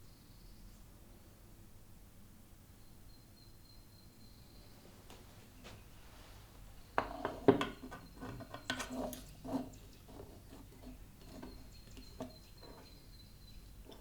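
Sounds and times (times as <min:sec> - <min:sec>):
hard objects knocking on surface: 0:07.0 - 0:09.1.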